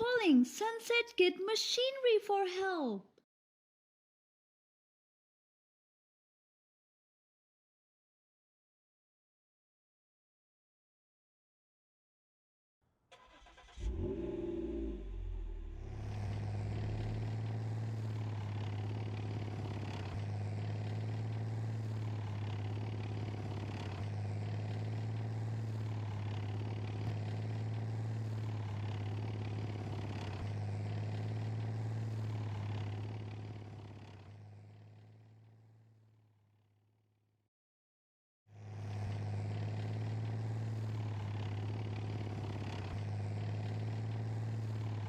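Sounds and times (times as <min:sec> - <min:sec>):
cartoon engine hum: 0:13.4 - 0:21.0.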